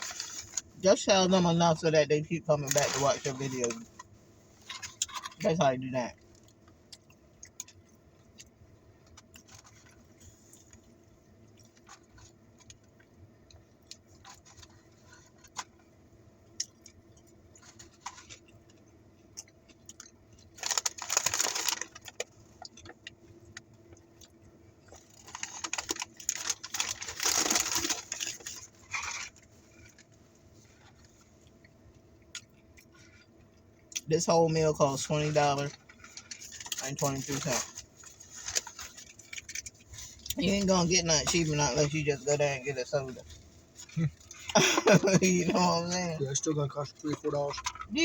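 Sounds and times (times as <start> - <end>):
soft chewing: 6.1 - 34.1.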